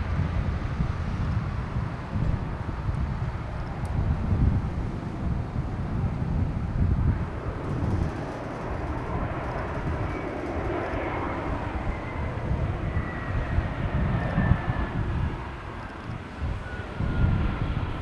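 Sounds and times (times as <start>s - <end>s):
jet engines rumbling with whine: 0.0s - 18.0s.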